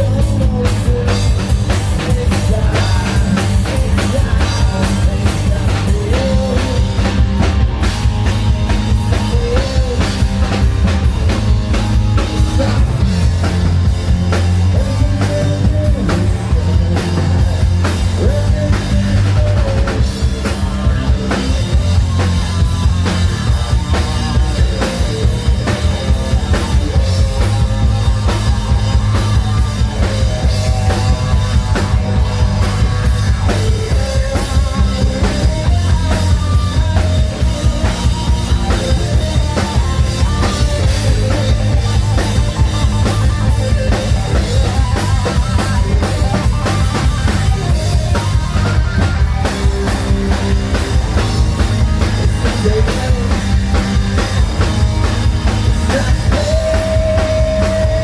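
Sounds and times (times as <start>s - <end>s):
hard rock band playing: 0.0s - 58.0s.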